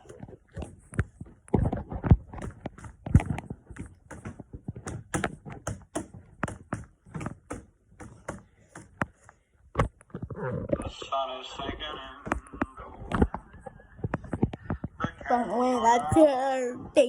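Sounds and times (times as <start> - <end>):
irregular clicks and taps: 0.0 - 10.3.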